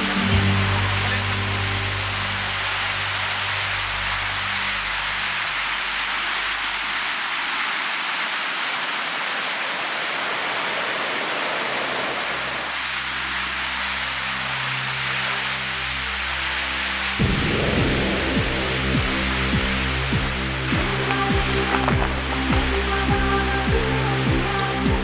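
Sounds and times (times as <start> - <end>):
low background music notes: 0.0 - 4.5, 13.8 - 25.0
fast-flowing river rushing: 0.0 - 25.0.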